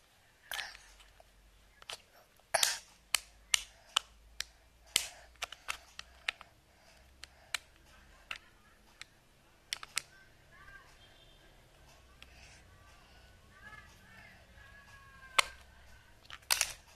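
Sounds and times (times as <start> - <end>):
plastic toy parts clicking together: 1.8 - 9.1, 9.7 - 10.1, 15.3 - 16.9.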